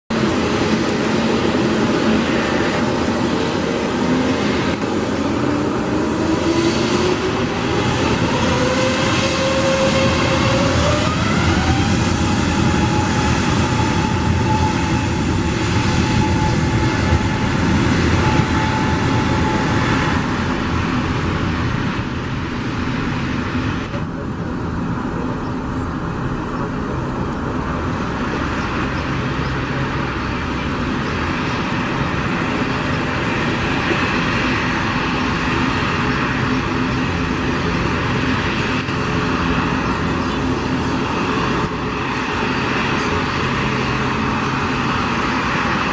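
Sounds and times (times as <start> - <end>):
jet engines at takeoff power: 0.1 - 45.9.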